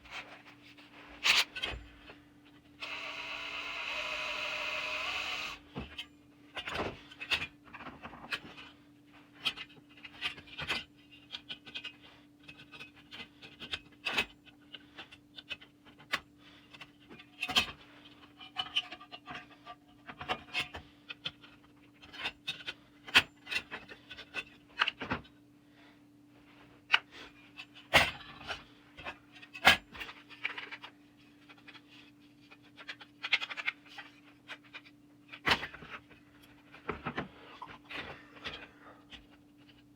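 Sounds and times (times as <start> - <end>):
faint hum: 0.0 - 39.9.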